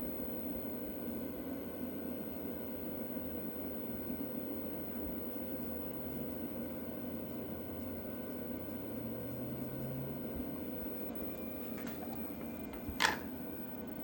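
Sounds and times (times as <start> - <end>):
electric kettle heating water: 0.0 - 14.0
kettle switch click: 11.7 - 13.3.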